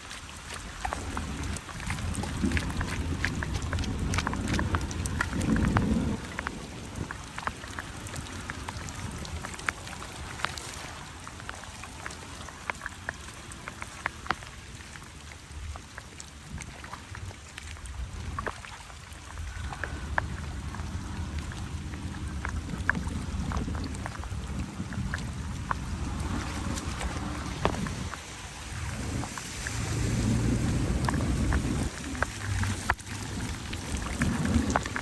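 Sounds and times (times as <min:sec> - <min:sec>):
water drops and splashes: 0:00.0 - 0:35.0
low rumble: 0:16.6 - 0:35.0.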